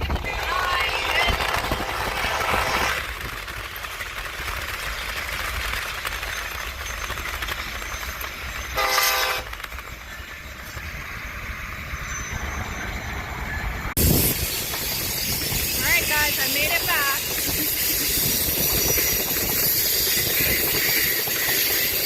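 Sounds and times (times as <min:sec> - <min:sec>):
steady rushing noise: 0:00.0 - 0:07.5, 0:12.9 - 0:22.0
short horn blast: 0:08.8 - 0:09.5.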